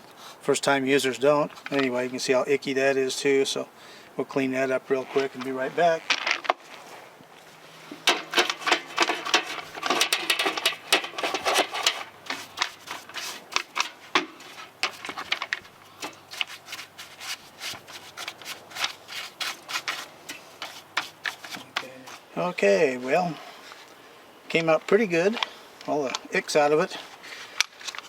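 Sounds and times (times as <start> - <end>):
brush scrubbing plastic: 8.0 - 22.4.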